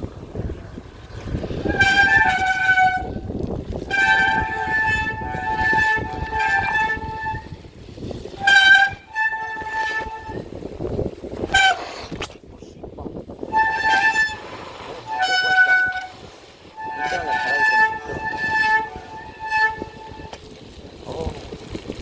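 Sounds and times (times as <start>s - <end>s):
rolling noise: 0.0s - 22.0s
wind: 0.0s - 22.0s
vehicle horn blasts: 1.6s - 3.3s, 3.9s - 7.5s, 8.4s - 10.5s, 11.5s - 11.9s, 13.5s - 20.4s.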